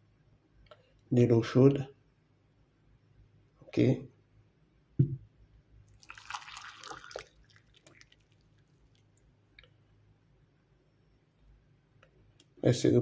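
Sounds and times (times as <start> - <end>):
short thump: 5.0 - 5.3
hot water splashing in a cup: 5.9 - 9.2.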